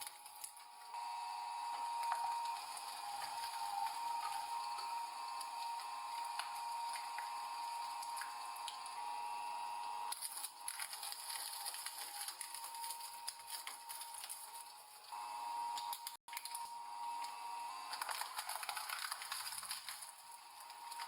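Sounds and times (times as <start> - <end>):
steady machine whine: 0.0 - 21.0
machine crushing: 1.7 - 8.9, 10.1 - 15.0, 17.9 - 21.0.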